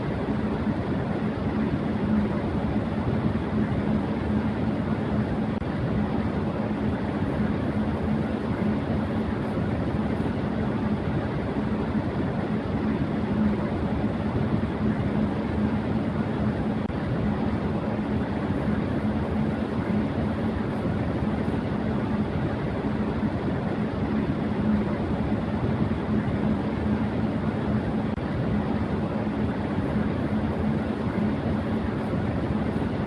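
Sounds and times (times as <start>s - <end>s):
electric fan whooshing: 0.0s - 33.0s
fan motor hum: 0.0s - 33.0s.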